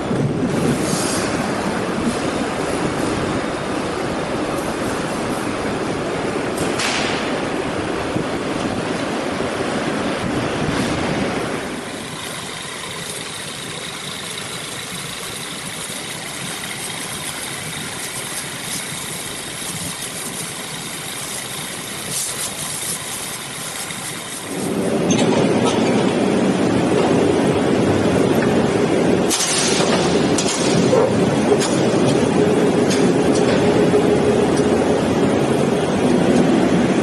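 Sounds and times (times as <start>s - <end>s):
road roller engine running: 0.0s - 37.0s.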